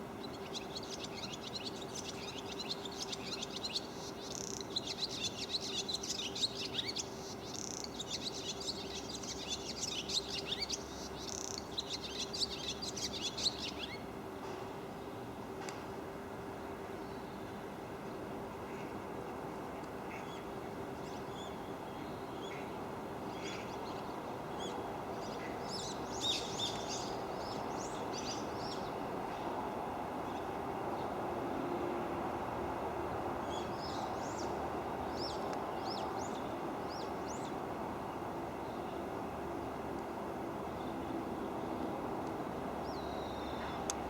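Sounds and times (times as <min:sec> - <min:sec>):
steady background hum: 0:00.0 - 0:44.0
swallows twittering: 0:00.2 - 0:14.0.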